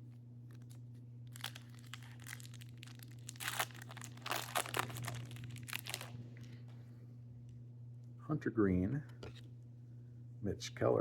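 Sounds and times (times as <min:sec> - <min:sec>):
steady low hum: 0:00.0 - 0:11.0
foil wrapper crinkling: 0:00.6 - 0:06.6.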